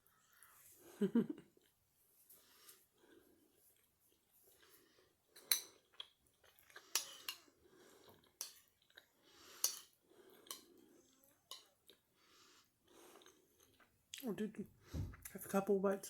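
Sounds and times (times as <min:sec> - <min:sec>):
person chewing: 0:02.6 - 0:14.2.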